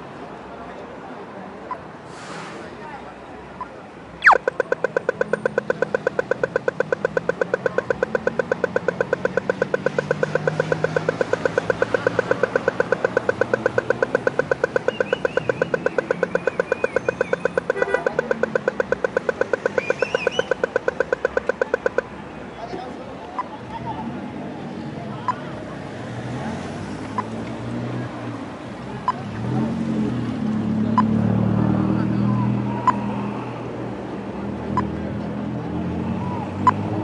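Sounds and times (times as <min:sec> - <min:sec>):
low traffic noise: 0:00.0 - 0:37.0
crossing signal ticking rapidly: 0:04.2 - 0:22.2.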